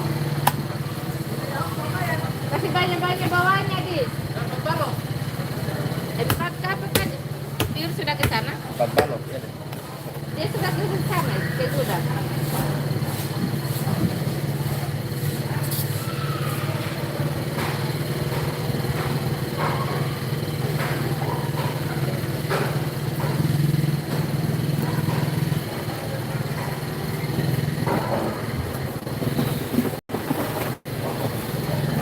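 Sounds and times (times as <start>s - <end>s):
faint voices: 0.6s - 18.6s
knocks: 6.2s - 9.2s.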